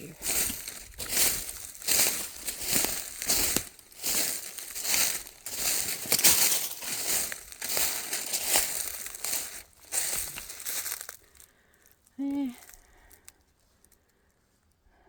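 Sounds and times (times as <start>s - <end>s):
footsteps crunching dry leaves: 0.0s - 11.5s.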